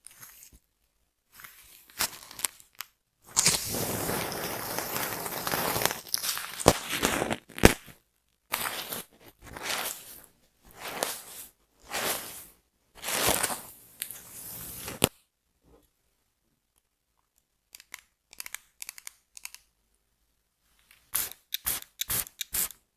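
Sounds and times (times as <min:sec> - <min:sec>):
scratching scalp and hair: 0:03.3 - 0:07.9, 0:08.5 - 0:15.1.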